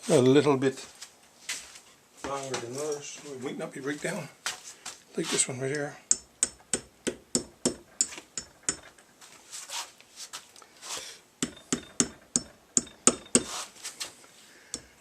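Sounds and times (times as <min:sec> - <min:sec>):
hammer tapping metal rods: 0:06.1 - 0:09.0, 0:11.4 - 0:13.6, 0:14.7 - 0:15.0.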